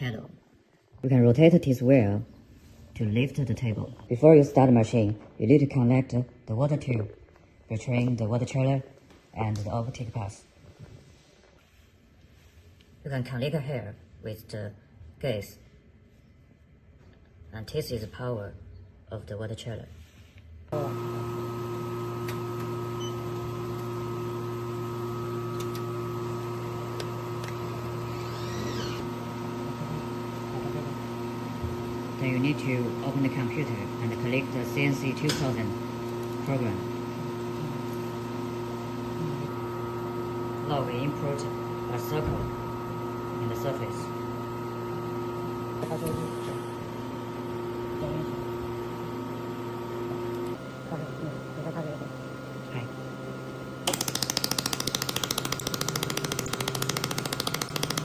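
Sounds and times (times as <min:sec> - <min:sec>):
water chiller humming: 0:20.7 - 0:58.0.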